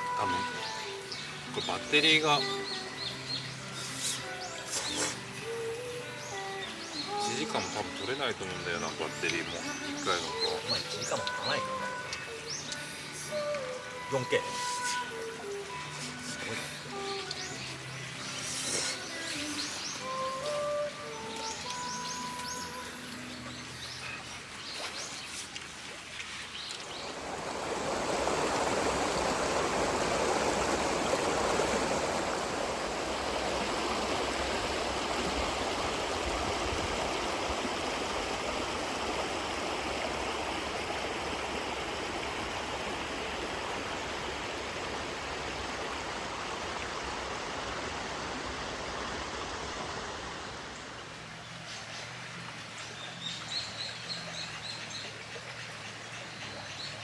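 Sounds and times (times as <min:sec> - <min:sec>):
river water rushing: 0:00.0 - 0:57.0.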